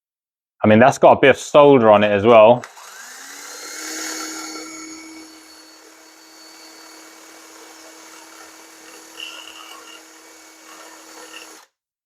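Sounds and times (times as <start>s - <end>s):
impact driver motor whine: 2.6s - 11.7s
wire brush scratching pipe: 3.5s - 11.7s.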